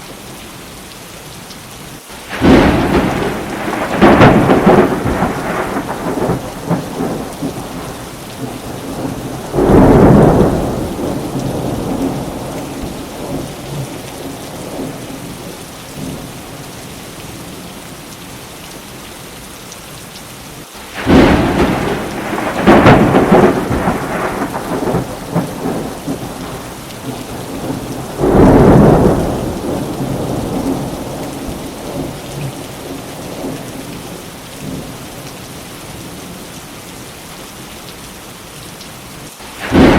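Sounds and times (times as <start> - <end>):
steady rain: 0.0 - 39.9
thunder peals: 2.3 - 15.1, 21.0 - 33.6, 39.6 - 39.9.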